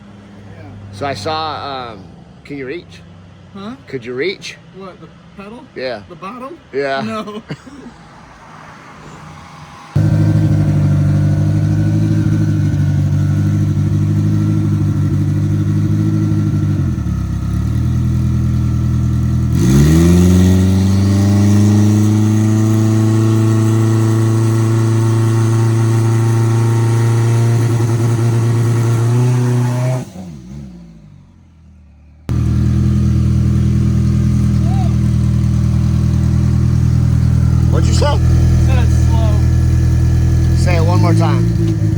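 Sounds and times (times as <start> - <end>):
race car engine revving: 9.1 - 41.9.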